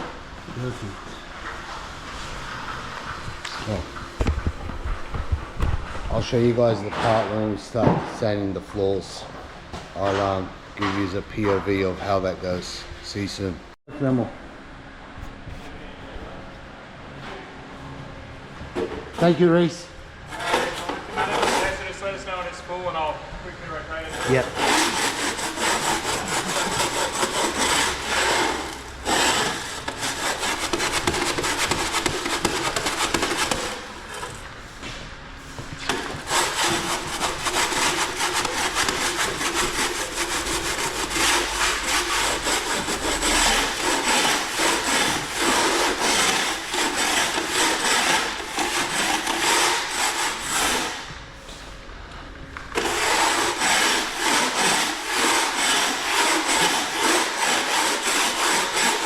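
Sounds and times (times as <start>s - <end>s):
hand tool scraping: 20.3s - 22.1s, 23.9s - 51.7s, 52.7s - 59.0s.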